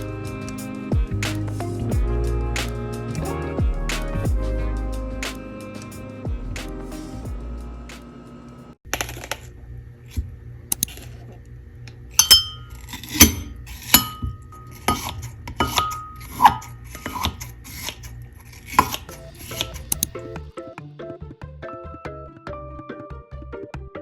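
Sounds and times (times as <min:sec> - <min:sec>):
dishes and cutlery clinking: 0:13.2 - 0:17.4.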